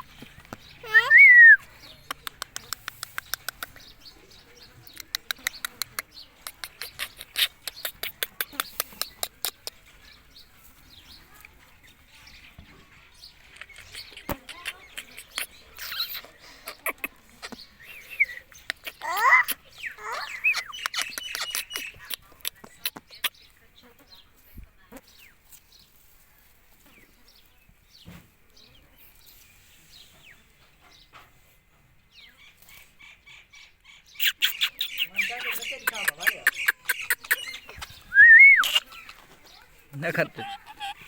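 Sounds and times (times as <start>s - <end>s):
soft chatter: 0.0s - 41.0s
sharp clicks: 2.0s - 3.9s, 4.8s - 9.8s.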